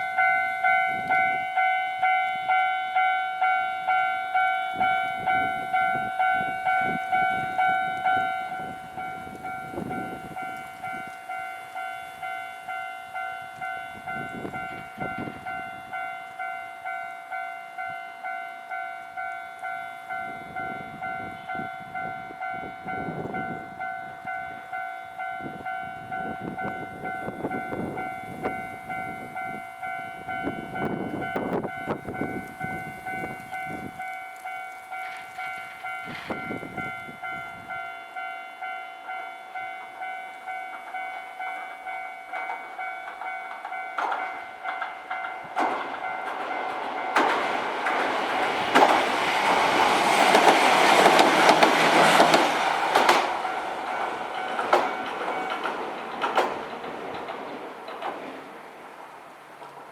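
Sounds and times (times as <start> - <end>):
level crossing warning bell: 0.0 - 58.6
train rumbling over crossing: 0.0 - 59.9.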